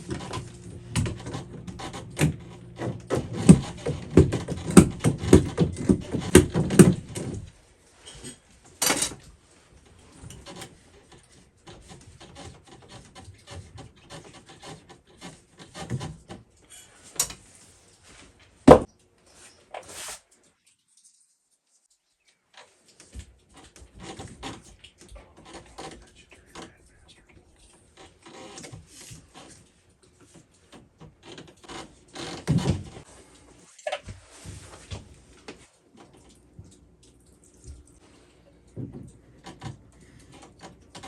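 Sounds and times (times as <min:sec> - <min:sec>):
scraping and knocking: 0:00.0 - 0:09.1
small clicks and rubs: 0:07.1 - 0:41.0.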